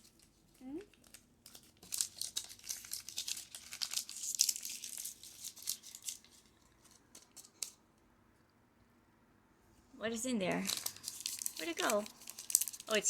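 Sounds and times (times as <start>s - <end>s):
plastic wrappers crinkling and tearing: 0.0s - 7.8s, 10.5s - 13.0s.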